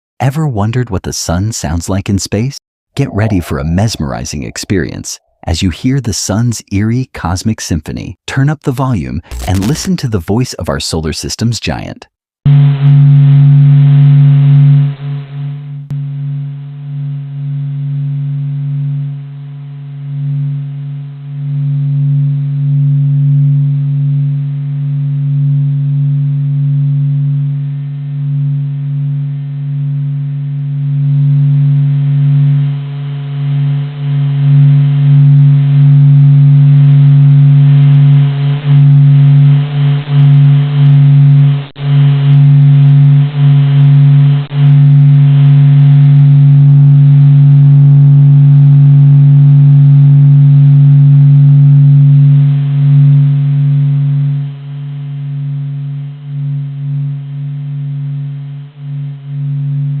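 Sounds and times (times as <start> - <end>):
low droning hum: 3.0 - 5.8, 16.9 - 60.0.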